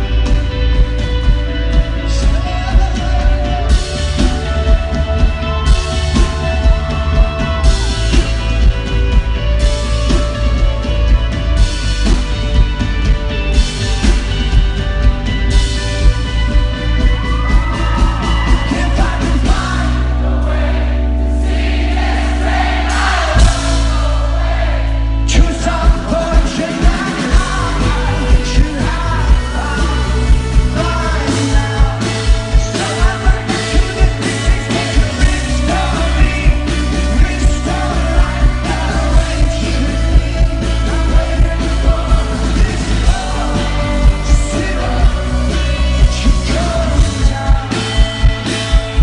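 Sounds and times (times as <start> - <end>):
rock band playing: 0.0 - 49.0
person singing: 1.9 - 8.6, 17.2 - 20.9, 25.2 - 49.0.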